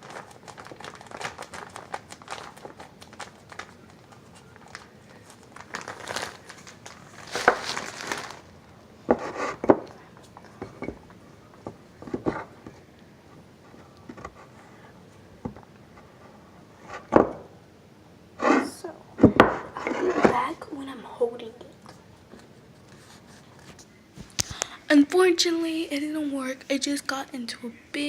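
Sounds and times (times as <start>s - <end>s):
plastic packaging crinkling: 0.0s - 8.6s.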